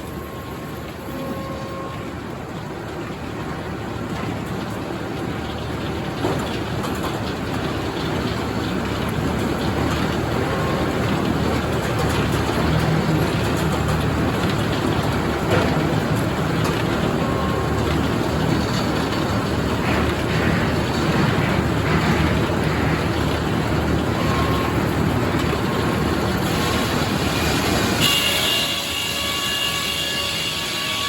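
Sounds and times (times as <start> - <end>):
high machine whine: 0.0 - 2.4
band sawmill running: 0.0 - 31.0.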